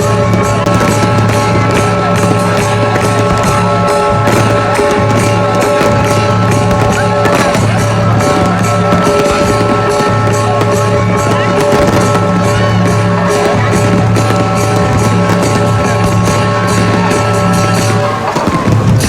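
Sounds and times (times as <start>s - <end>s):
loud music with steady beat: 0.0s - 19.0s.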